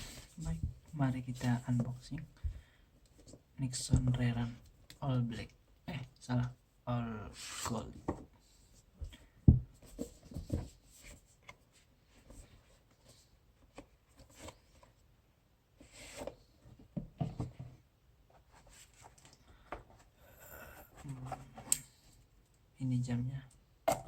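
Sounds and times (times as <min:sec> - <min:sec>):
box and packaging being handled: 0:09.8 - 0:15.0.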